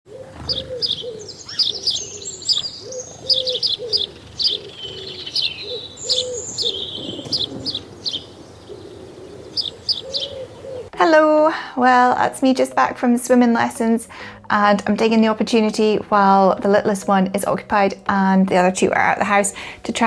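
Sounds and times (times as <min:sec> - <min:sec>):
birds chirping and trilling: 0:00.1 - 0:11.0, 0:12.0 - 0:20.0
low cooing: 0:00.1 - 0:11.0.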